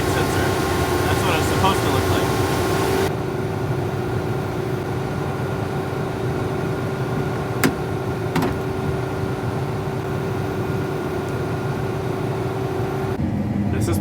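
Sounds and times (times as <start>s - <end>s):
combine harvester humming: 0.0s - 14.0s.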